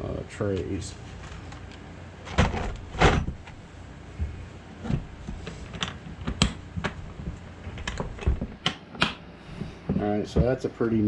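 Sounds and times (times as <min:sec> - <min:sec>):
plastic trays clicking and knocking: 0:04.8 - 0:09.2.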